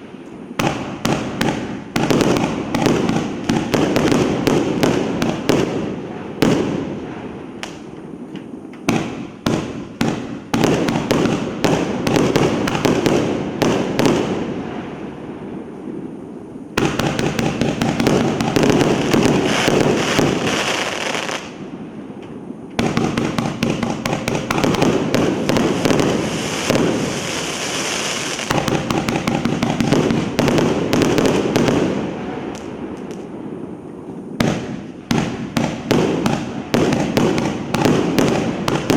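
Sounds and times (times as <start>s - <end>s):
firework crackle: 0.0s - 38.9s
firework launches and bursts: 22.8s - 33.4s.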